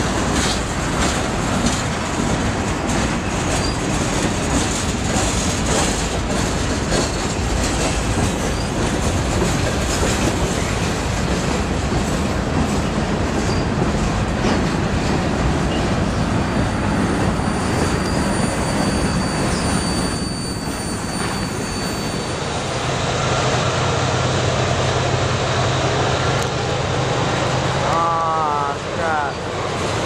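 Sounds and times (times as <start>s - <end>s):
wheels clacking over rail joints: 0.0s - 22.2s
freight train rumbling past: 0.0s - 30.0s
high wheel squeal: 3.6s - 3.8s, 8.4s - 8.8s, 15.7s - 22.9s.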